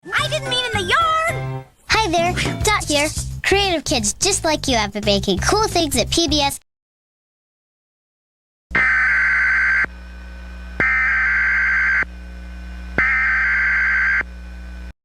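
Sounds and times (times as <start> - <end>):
electrical hum: 8.8 - 14.9.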